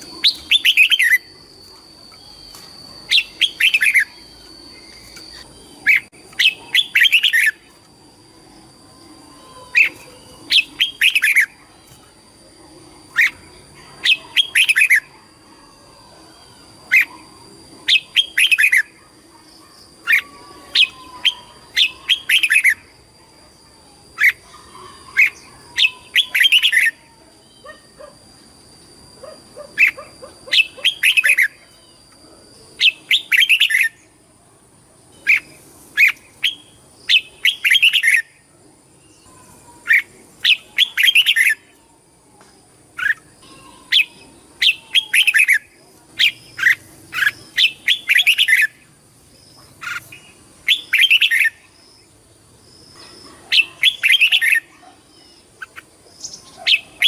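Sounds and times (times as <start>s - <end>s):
bird singing whistled phrases: 0.0s - 7.6s, 9.2s - 11.6s, 17.8s - 19.0s, 32.8s - 34.0s, 35.3s - 38.3s, 49.8s - 51.8s, 53.6s - 55.4s.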